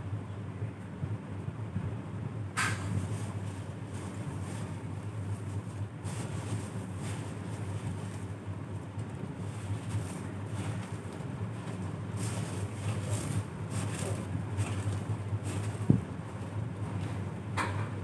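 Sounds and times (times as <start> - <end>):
steady low hum: 0.0 - 18.0
crackly chewing crunches: 5.3 - 17.3.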